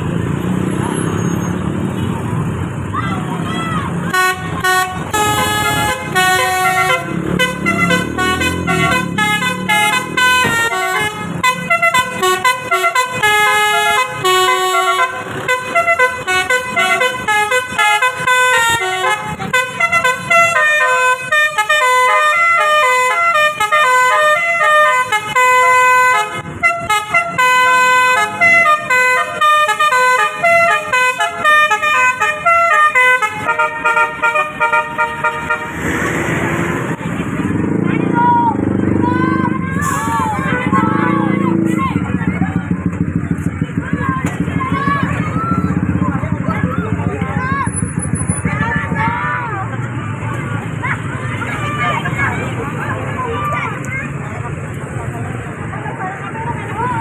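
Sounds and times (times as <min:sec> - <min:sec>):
bus melody horn: 0:04.1 - 0:35.9, 0:39.3 - 0:41.8.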